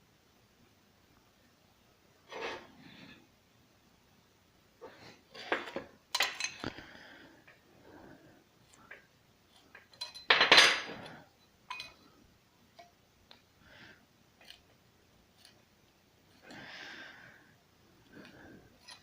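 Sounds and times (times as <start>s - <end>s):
metal pieces clinking on bench: 5.7s - 6.6s, 9.7s - 12.0s.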